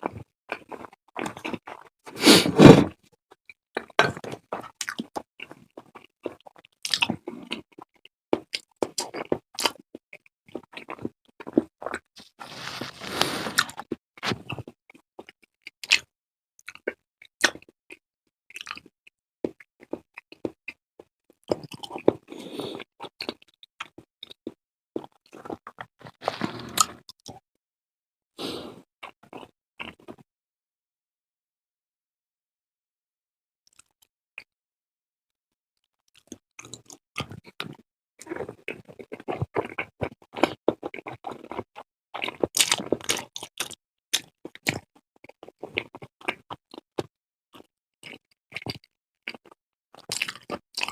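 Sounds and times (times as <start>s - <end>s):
wet chewing and smacking: 0.1s - 2.7s, 3.4s - 16.1s, 16.7s - 20.7s, 21.4s - 27.4s, 36.2s - 50.9s.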